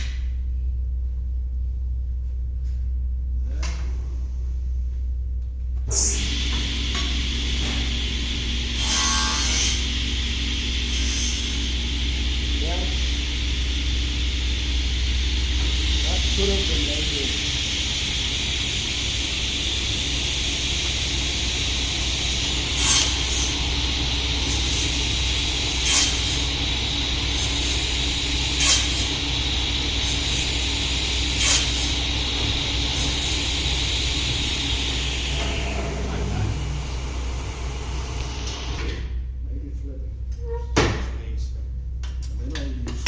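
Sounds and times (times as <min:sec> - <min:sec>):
woodworking saw running: 0:06.2 - 0:38.8.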